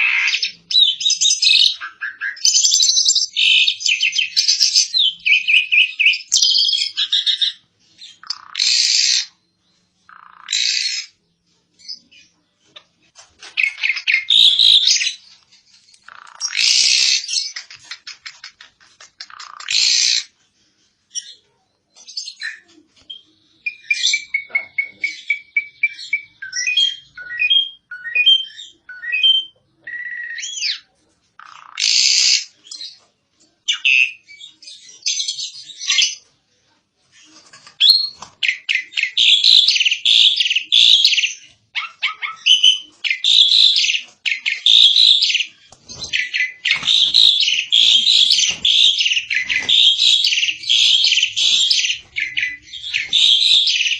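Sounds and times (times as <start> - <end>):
starling harsh chattering: 16.0 - 20.4, 41.8 - 53.9
starling whistled notes: 44.4 - 53.9.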